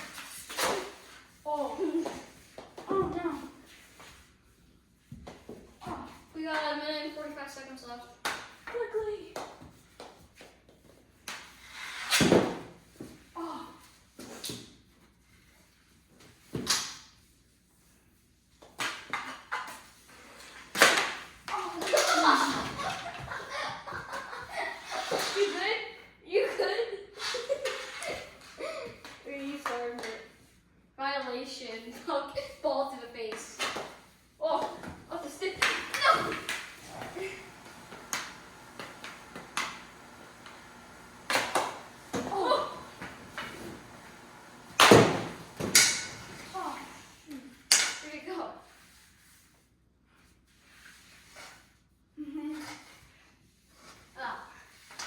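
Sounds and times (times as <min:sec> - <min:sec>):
hockey sticks striking ball: 0:34.6 - 0:46.6
ball hitting boards: 0:35.6 - 0:46.5
ball hitting hard surfaces: 0:41.2 - 0:46.5.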